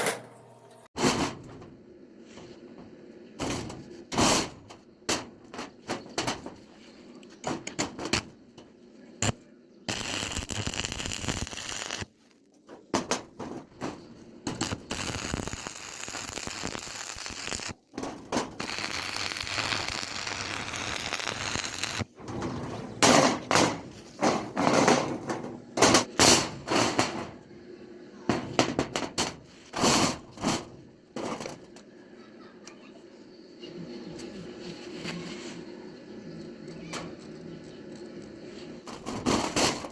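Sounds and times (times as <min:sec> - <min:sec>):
welding arc crackling: 0:09.2 - 0:12.4, 0:14.4 - 0:22.2.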